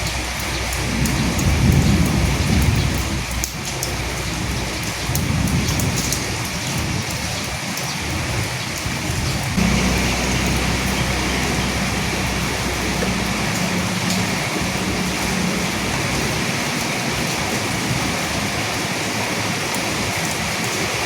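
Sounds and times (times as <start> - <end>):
thunder rumbling: 0.0 - 7.1, 8.9 - 19.3
rain hissing: 0.0 - 21.0
raindrops ticking sharply: 0.0 - 21.0
steady low hum: 9.6 - 17.9.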